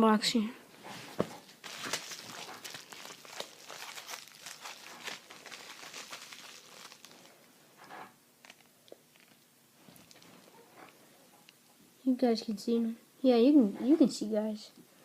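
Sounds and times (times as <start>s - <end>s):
packaging crinkling and rustling: 1.1s - 7.5s, 8.4s - 10.6s.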